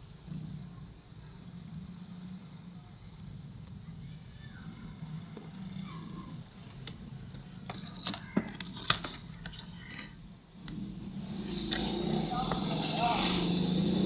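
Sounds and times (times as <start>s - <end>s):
tools and parts clicking: 6.7s - 10.2s.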